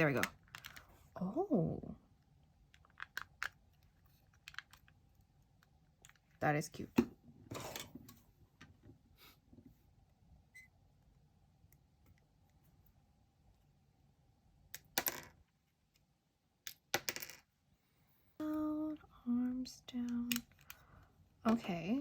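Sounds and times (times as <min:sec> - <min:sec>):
plastic parts clicking together: 0:00.2 - 0:00.9, 0:02.7 - 0:05.0, 0:20.1 - 0:20.8.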